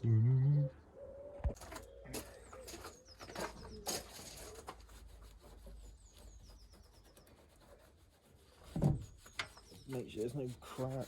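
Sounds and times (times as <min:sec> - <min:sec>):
light ticking and rubbing: 0:03.8 - 0:11.0
small bird chirping: 0:05.6 - 0:07.6, 0:09.1 - 0:10.4.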